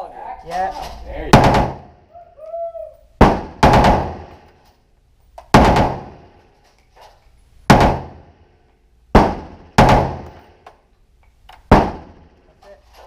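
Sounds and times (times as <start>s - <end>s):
echoing gunshots: 1.3s - 2.0s, 3.2s - 4.5s, 5.5s - 6.4s, 7.7s - 8.4s, 9.1s - 10.6s, 11.7s - 12.3s.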